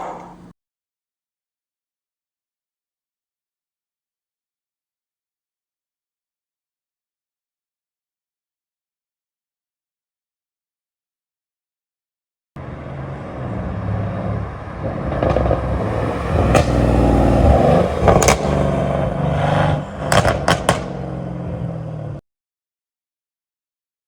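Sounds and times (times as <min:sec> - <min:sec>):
car engine revving: 0:12.6 - 0:22.2
exhaust pops and crackles: 0:14.8 - 0:21.2.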